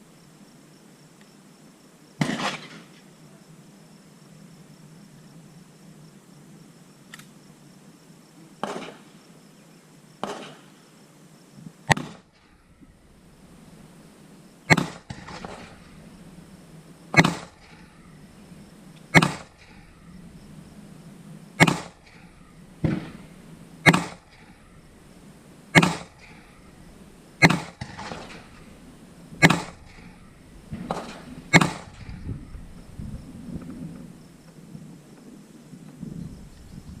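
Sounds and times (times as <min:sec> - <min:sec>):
gunshots with echo: 0:11.9 - 0:12.3, 0:14.7 - 0:15.9, 0:17.1 - 0:17.9, 0:19.1 - 0:19.8, 0:21.6 - 0:22.2, 0:22.8 - 0:24.4, 0:25.7 - 0:26.5, 0:27.4 - 0:28.6, 0:29.4 - 0:32.2.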